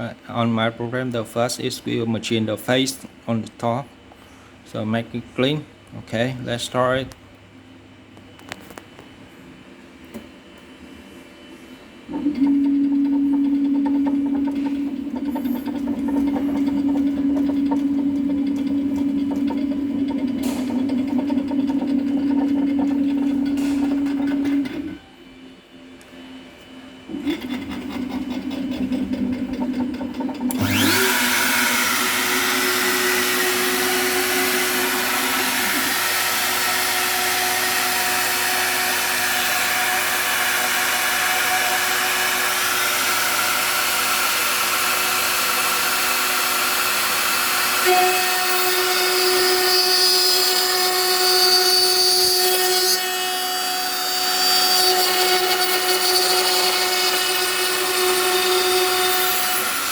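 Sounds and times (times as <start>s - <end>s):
router spindle whine milling wood: 12.1s - 25.0s, 27.0s - 59.9s.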